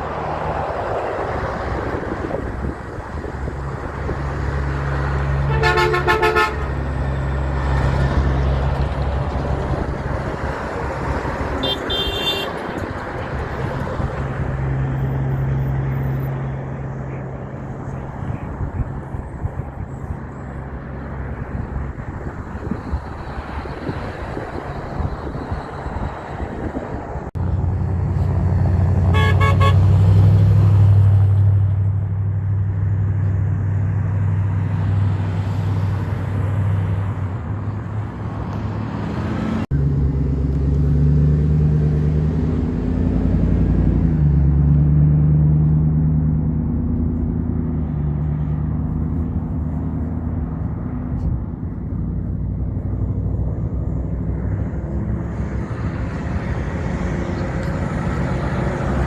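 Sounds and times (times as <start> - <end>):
heavy truck engines droning: 0.0 - 59.0
truck horn blast: 5.2 - 7.0, 11.6 - 12.8, 29.0 - 30.4.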